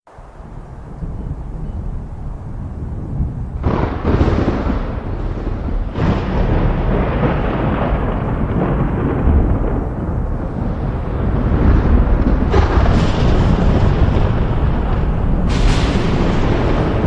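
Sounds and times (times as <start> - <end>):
low thunder rumble: 0.1 - 17.0
sharp thunder crack: 2.5 - 17.0.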